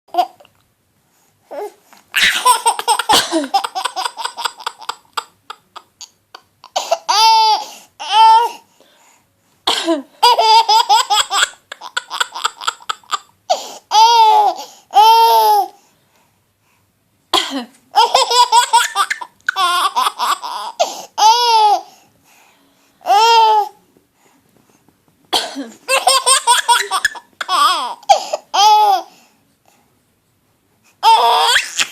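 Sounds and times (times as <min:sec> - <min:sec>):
baby laughing and squealing: 0:01.5 - 0:08.5, 0:10.2 - 0:15.7, 0:18.0 - 0:21.8, 0:25.9 - 0:29.1, 0:31.0 - 0:31.9
adult coughing: 0:03.1 - 0:03.5, 0:09.7 - 0:10.1, 0:17.4 - 0:17.8, 0:25.3 - 0:25.9.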